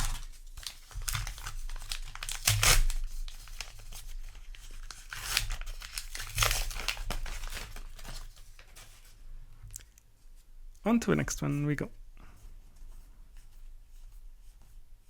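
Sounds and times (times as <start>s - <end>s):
paper wrapper tearing and crumpling: 0.0s - 9.1s.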